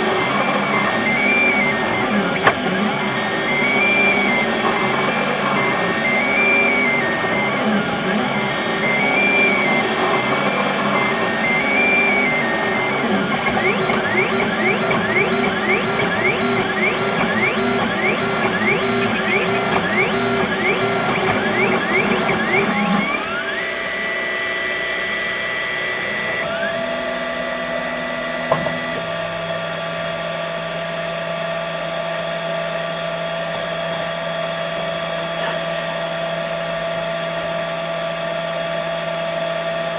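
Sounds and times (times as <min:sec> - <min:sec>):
printer humming: 0:00.0 - 0:29.8
printer motors whining: 0:00.0 - 0:39.9.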